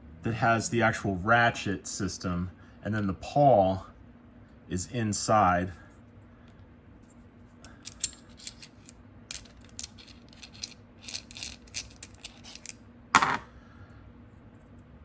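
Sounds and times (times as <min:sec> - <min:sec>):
ratchet clicking and clinking: 0:07.6 - 0:12.8.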